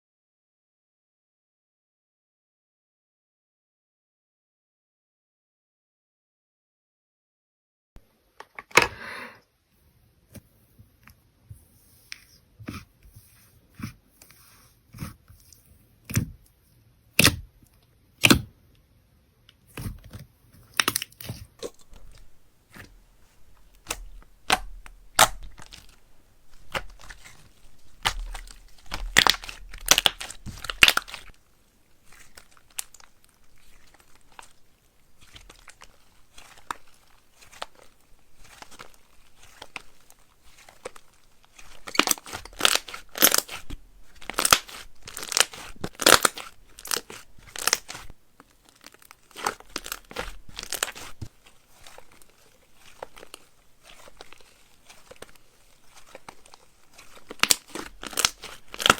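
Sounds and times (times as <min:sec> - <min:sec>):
slime clicking and crackling: 0:20.7 - 0:31.4, 0:32.0 - 0:58.9.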